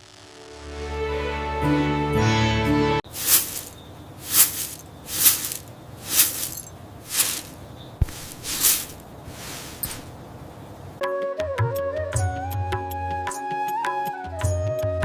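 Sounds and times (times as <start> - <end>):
short hissing swells: 3.1 - 10.2.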